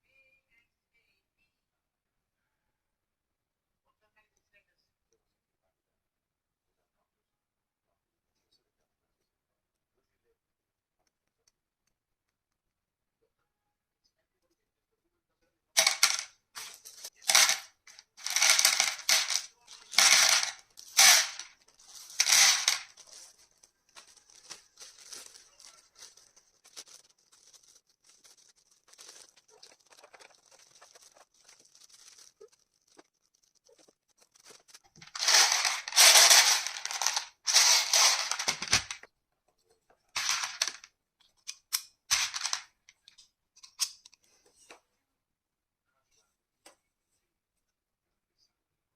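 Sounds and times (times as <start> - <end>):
plastic rustling and rattling: 15.8 - 39.1, 40.2 - 40.9, 42.1 - 42.7.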